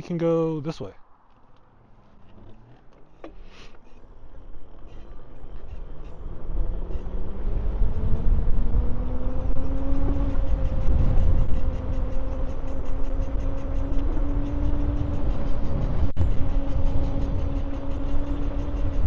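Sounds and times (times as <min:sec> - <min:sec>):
wind and tyres rushing: 0:00.0 - 0:19.0
electric motor whine rising: 0:06.0 - 0:19.0.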